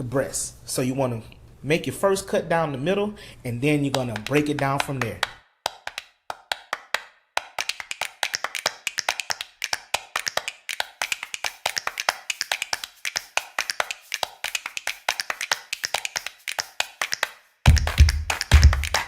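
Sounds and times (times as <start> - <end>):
fast clicking percussion beat: 3.9 - 19.0.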